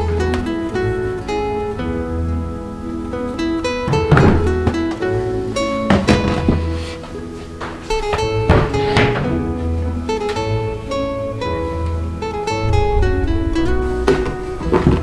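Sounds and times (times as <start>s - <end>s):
flamenco-style acoustic guitar: 0.0s - 15.0s
bass line: 7.9s - 15.0s.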